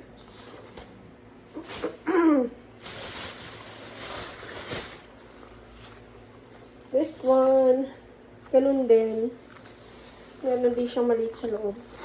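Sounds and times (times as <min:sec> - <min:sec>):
package rustling: 0:02.8 - 0:06.0.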